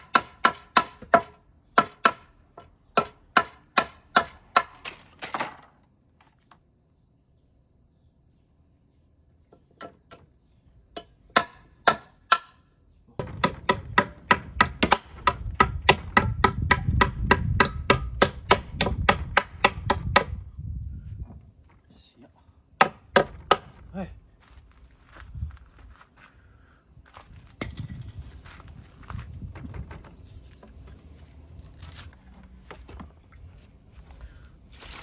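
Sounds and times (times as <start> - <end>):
tool knocking on wood: 13.2 - 20.4, 22.8 - 23.8.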